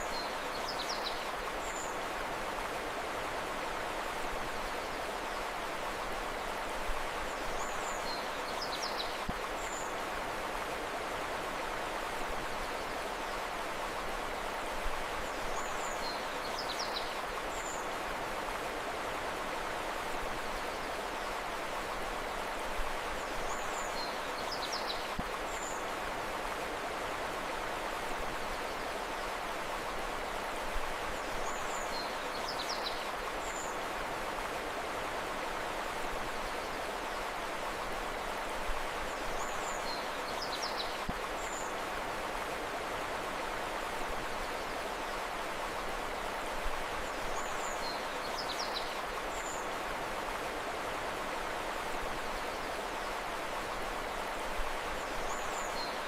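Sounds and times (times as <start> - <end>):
river water rushing: 0.0 - 56.0.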